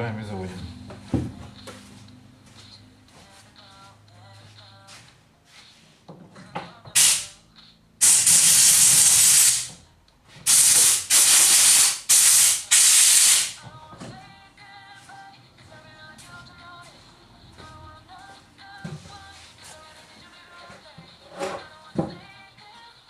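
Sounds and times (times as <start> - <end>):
compressed air hissing blasts: 7.0 - 7.4, 8.0 - 9.8, 10.5 - 13.6.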